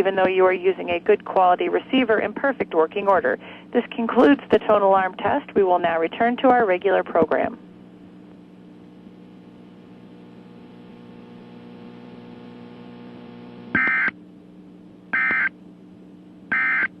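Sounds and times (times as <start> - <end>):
electrical hum: 0.0 - 17.0
loud buzzing data bursts: 8.7 - 14.2, 15.1 - 15.5, 16.5 - 17.0.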